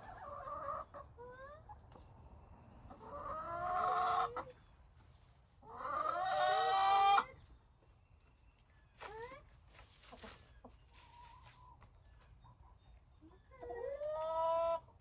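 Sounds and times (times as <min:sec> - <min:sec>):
chicken calling: 0:02.9 - 0:04.6, 0:05.6 - 0:07.3.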